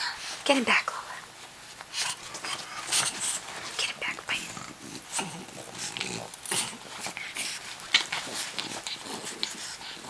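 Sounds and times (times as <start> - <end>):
dogs snorting and grunting: 4.3 - 10.0.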